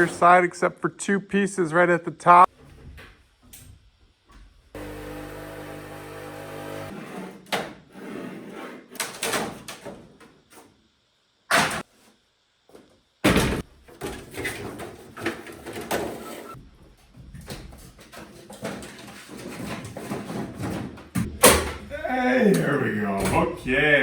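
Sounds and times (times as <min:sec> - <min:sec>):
rustling and scraping: 0:13.9 - 0:21.2.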